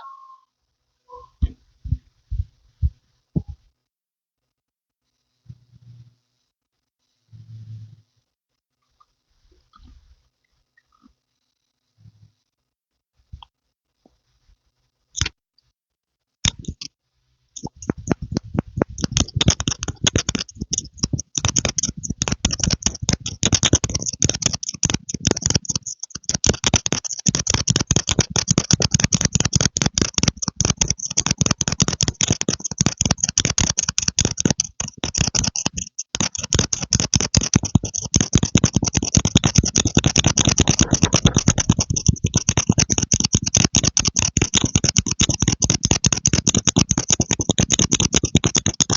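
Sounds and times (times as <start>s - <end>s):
rapid clicking and tapping: 16.4s - 17.0s, 17.6s - 48.9s.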